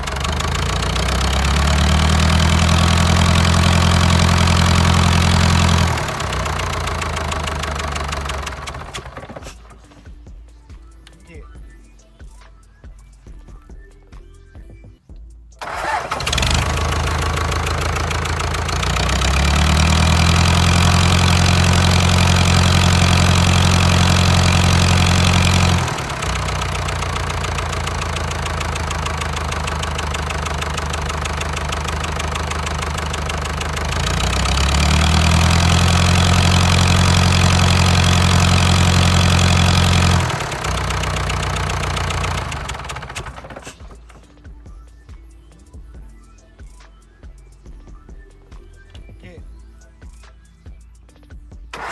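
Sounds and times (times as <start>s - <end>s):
diesel engine revving and idling: 0.0s - 10.0s, 15.6s - 44.3s.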